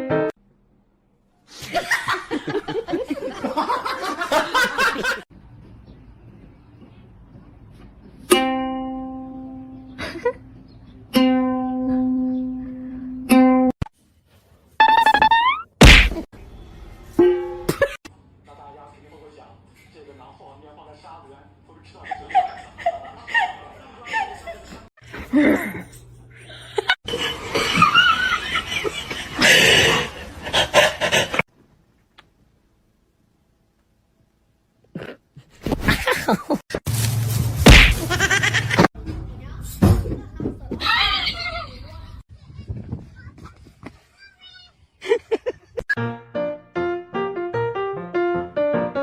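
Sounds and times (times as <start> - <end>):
people laughing: 1.6 - 5.3, 22.0 - 24.8, 26.5 - 31.4, 35.9 - 36.6, 37.9 - 38.9, 45.0 - 45.8
plucked string notes ringing: 8.3 - 10.0, 11.1 - 13.7.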